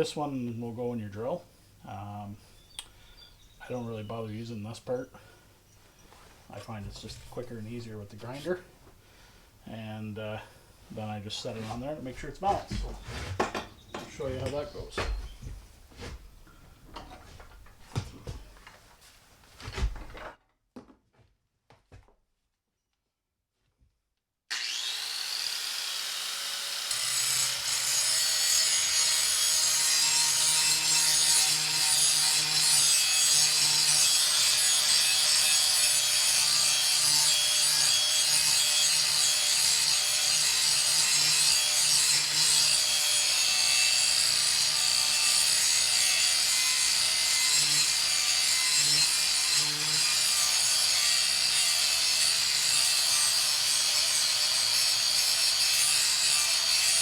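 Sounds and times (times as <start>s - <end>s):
angle grinder grinding steel blade: 6.6s - 8.6s, 24.5s - 57.0s.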